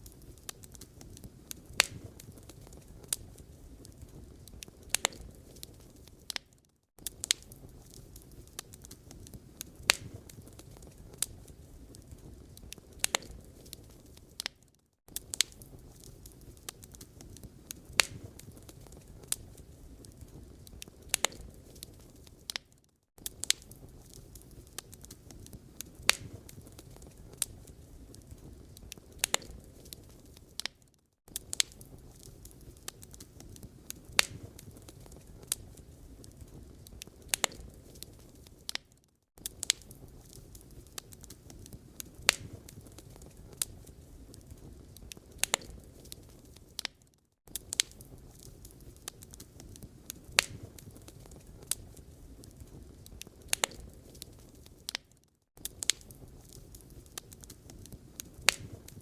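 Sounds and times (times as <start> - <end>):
low rumble of burning: 0.0 - 55.0, 55.6 - 59.0
wood fire crackling and popping: 0.0 - 59.0.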